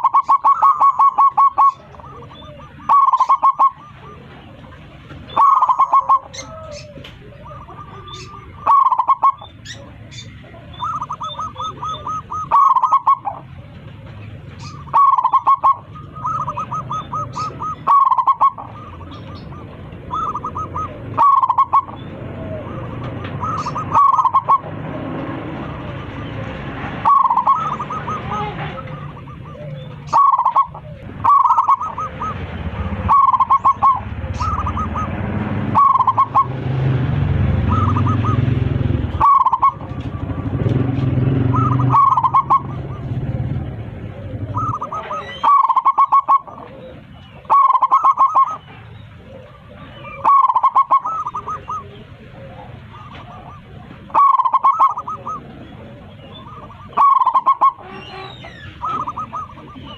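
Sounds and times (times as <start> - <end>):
dove cooing: 0.0 - 59.9.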